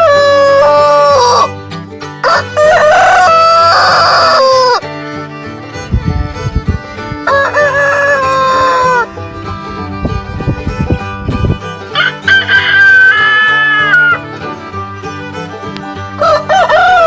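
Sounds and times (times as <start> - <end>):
rooster crowing: 0.0 - 1.5, 2.2 - 4.8, 7.2 - 9.1, 12.0 - 14.2, 16.2 - 17.0
background music: 0.0 - 10.0, 11.8 - 17.0.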